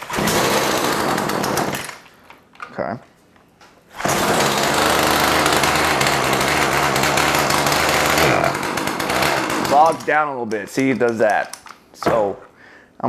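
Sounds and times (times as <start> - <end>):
chainsaw engine running: 0.0 - 1.9, 4.0 - 10.2.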